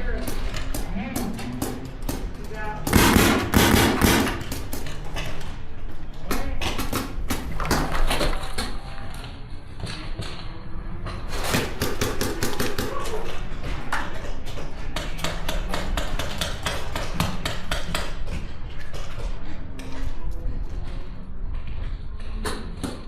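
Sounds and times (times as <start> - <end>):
paintball markers firing: 2.9 - 5.0.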